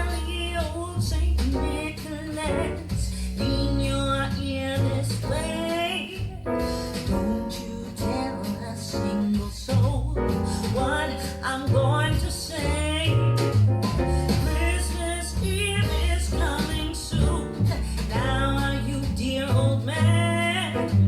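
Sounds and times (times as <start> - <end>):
bass line: 0.0 - 21.0.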